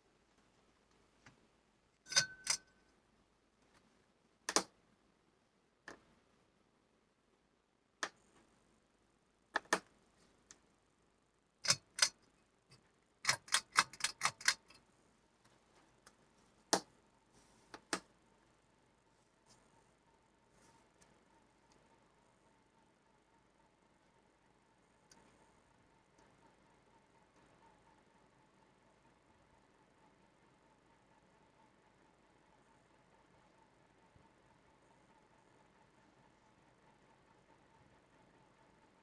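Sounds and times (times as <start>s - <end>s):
faint steady tone: 0.0s - 13.3s, 14.2s - 39.0s
sharp irregular clicks and clacks: 11.6s - 14.8s.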